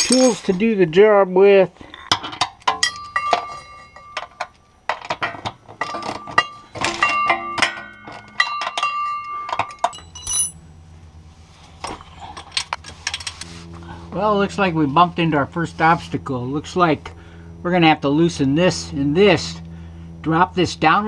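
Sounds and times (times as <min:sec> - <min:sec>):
metal hand tools clinking: 0:00.0 - 0:00.6, 0:02.0 - 0:04.6, 0:05.8 - 0:10.8
low steady hum: 0:00.0 - 0:21.0.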